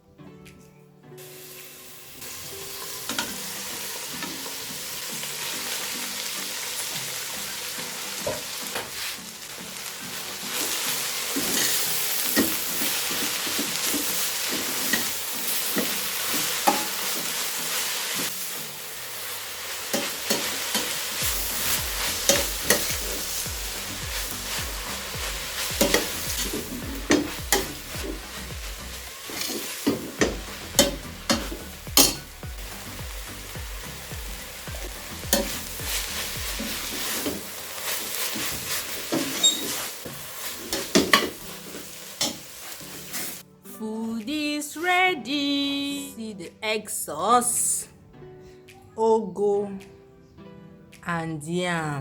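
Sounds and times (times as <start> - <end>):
food sizzling in hot oil: 1.2 - 43.5
spoon scraping a pot: 38.2 - 39.9.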